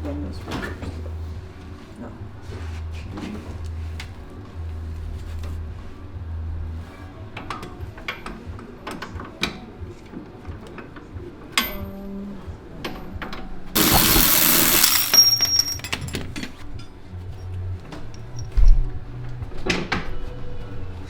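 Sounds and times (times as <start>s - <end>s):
metal tools clinking on bolts: 13.8s - 16.3s.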